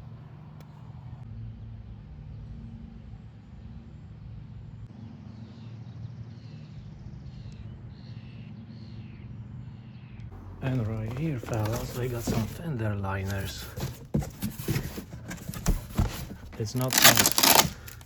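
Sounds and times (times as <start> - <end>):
low mechanical hum: 10.3 - 18.0.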